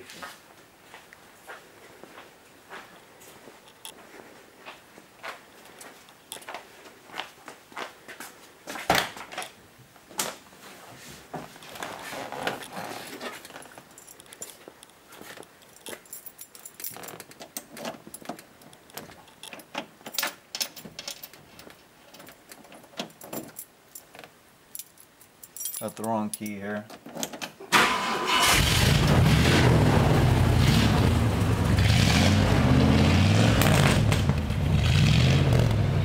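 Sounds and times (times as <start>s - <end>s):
keys jangling: 13.5s - 14.6s, 15.6s - 18.4s, 19.0s - 27.4s.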